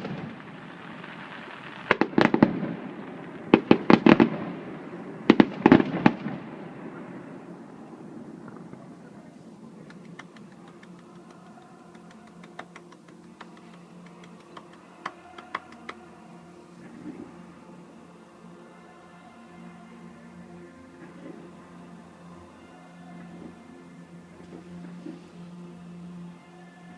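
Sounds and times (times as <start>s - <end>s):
fireworks bangs: 0.0s - 9.0s
fireworks crackles and pops: 0.0s - 9.2s, 9.8s - 16.0s.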